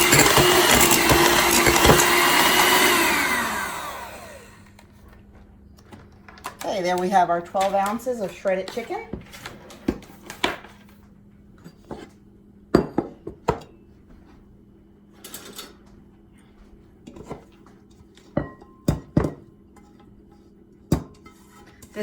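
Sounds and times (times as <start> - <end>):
kitchen bowls and utensils clinking: 0.0 - 3.1, 15.2 - 15.9, 17.0 - 22.0.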